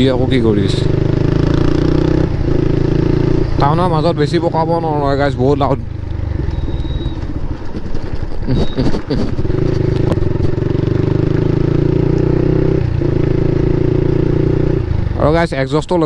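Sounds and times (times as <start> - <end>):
motorcycle engine running: 0.0 - 15.8.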